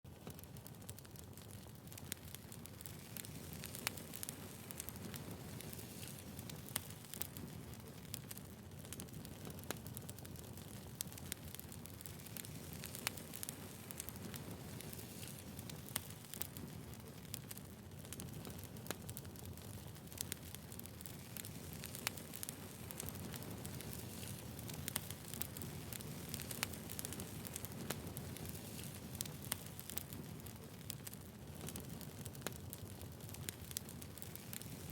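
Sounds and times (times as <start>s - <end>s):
campfire burning: 0.1s - 34.9s
low rumble of flames: 0.1s - 34.9s
wood crackling and popping: 0.1s - 34.9s.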